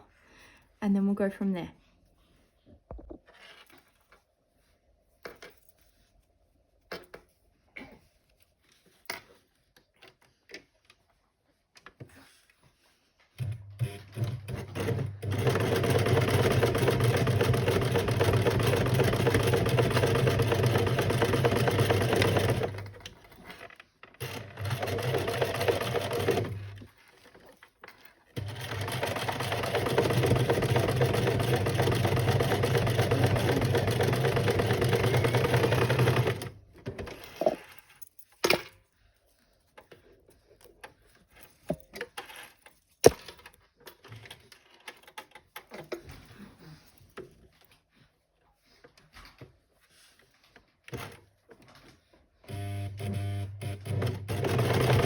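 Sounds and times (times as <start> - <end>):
electric sewing machine stitching: 13.4 - 23.1, 24.2 - 26.8, 28.4 - 37.6, 52.5 - 55.0.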